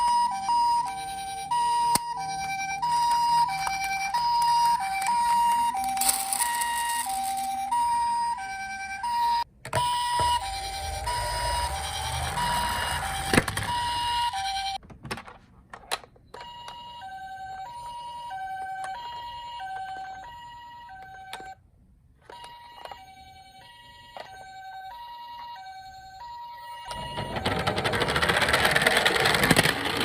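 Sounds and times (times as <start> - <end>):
toy two-tone siren: 0.0 - 14.8, 16.3 - 21.6, 22.2 - 30.0
rumbling noise: 10.2 - 14.8.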